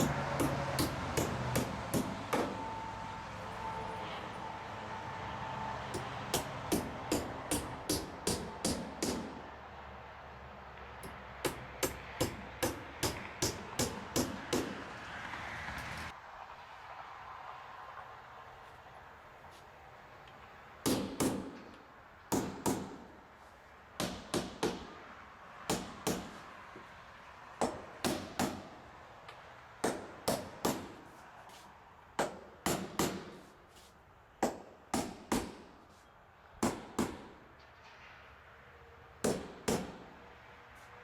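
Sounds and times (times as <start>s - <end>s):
hammer striking nails: 0.0s - 2.6s, 5.9s - 9.4s, 11.0s - 14.8s, 20.8s - 23.0s, 24.0s - 25.0s, 25.7s - 26.4s, 27.6s - 28.6s, 29.8s - 31.0s, 32.2s - 33.5s, 34.4s - 35.7s, 36.6s - 37.3s, 39.2s - 40.0s.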